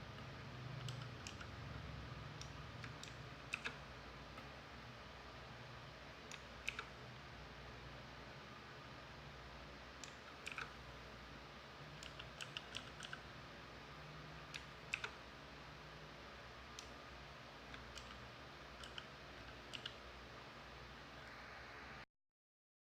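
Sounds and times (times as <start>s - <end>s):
faint steady hiss: 0.0s - 22.1s
mechanical keyboard keys clicking: 0.8s - 1.5s, 2.4s - 3.8s, 6.3s - 6.9s, 10.0s - 10.8s, 12.0s - 13.2s, 14.5s - 15.2s, 18.8s - 20.0s.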